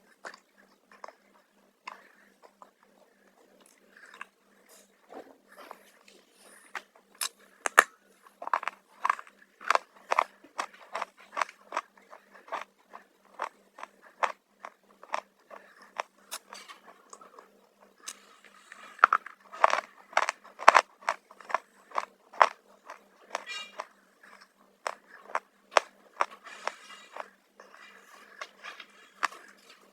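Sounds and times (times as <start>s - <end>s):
chips being chewed: 7.2s - 29.9s.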